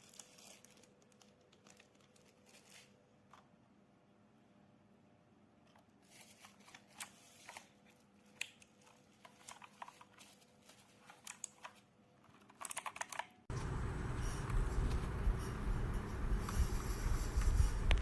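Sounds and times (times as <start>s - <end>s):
mechanical keyboard typing: 12.4s - 13.5s.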